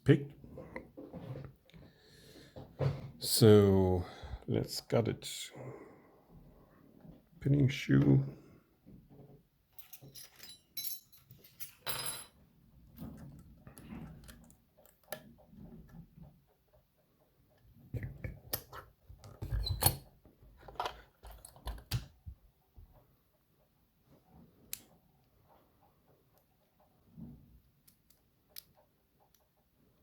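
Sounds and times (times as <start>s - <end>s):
metal tools clinking: 9.7s - 12.4s.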